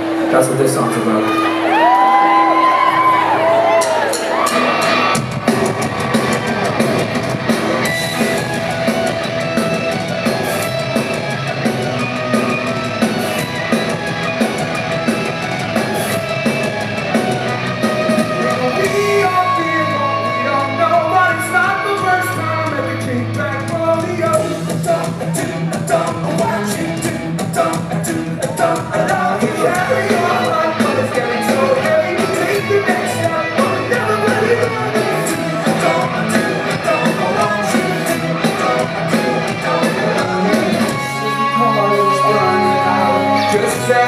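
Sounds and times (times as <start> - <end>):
live rock band playing: 0.0 - 44.0
drums steady beat: 3.5 - 44.0.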